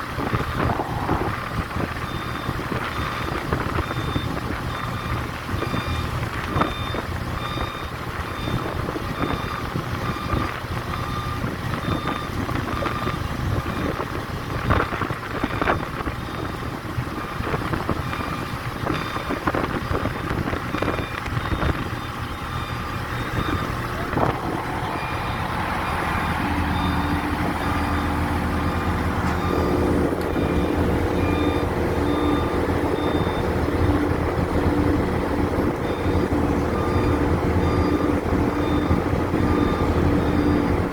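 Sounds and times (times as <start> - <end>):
diesel engine running: 0.0 - 40.9
warning beep: 22.6 - 34.0.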